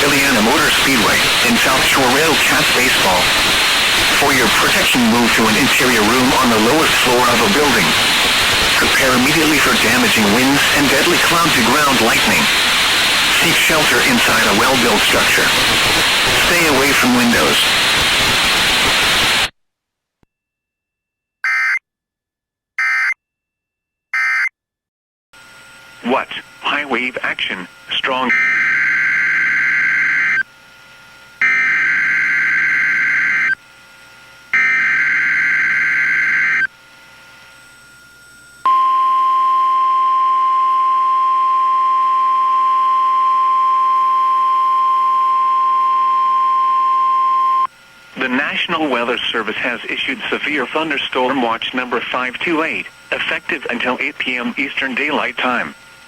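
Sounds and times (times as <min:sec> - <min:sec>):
radio static hiss: 0:00.0 - 0:19.5, 0:25.6 - 0:30.4, 0:48.0 - 0:56.0.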